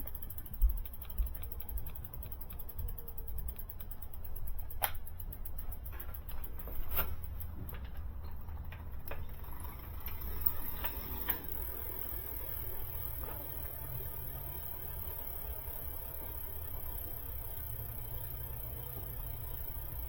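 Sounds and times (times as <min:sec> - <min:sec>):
sharp clicks and taps: 0:00.0 - 0:09.3.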